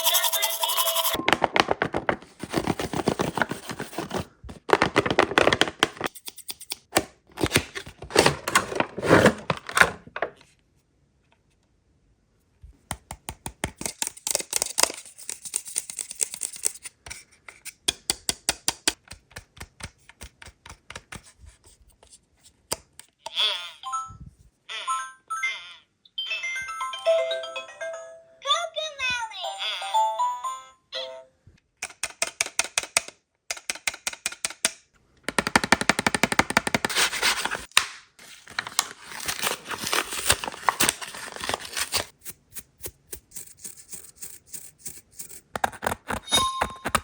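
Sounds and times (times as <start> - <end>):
scratching of packaging: 0.0 - 10.1, 13.7 - 17.8, 35.4 - 47.0.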